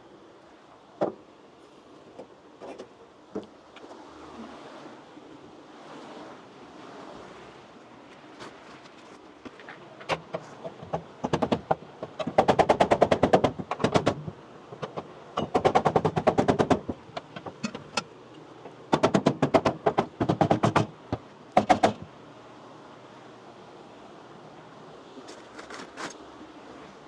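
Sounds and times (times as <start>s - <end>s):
rapid mechanical hammering: 10.7s - 18.0s, 18.9s - 22.1s.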